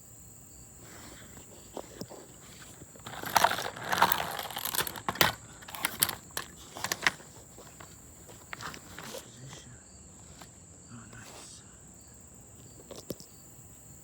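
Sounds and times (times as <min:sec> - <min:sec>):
parts scraping and rustling: 0:00.9 - 0:11.5
sharp clicks and knocks: 0:03.0 - 0:09.2.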